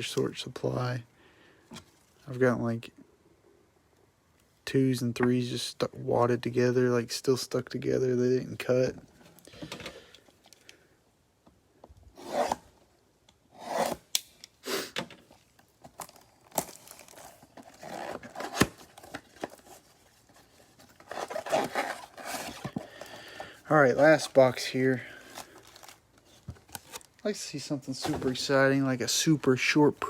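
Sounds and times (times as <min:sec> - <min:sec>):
card packaging tearing and rustling: 0:15.3 - 0:27.2.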